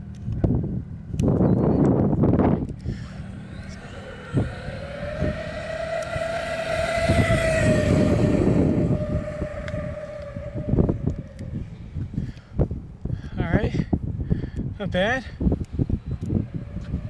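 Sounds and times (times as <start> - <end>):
wind buffeting microphone: 0.3 - 17.0
electric motor whining: 2.7 - 12.4, 15.7 - 17.0.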